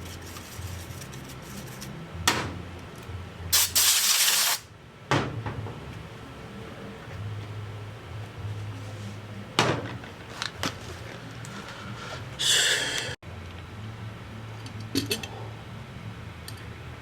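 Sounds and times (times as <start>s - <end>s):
steady low hum: 0.0s - 3.6s, 4.7s - 17.0s
short hiss: 3.6s - 4.6s.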